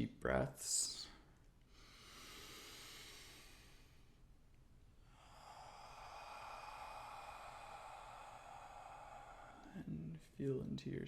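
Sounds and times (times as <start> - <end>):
person breathing deeply: 1.7 - 4.2, 5.0 - 10.4.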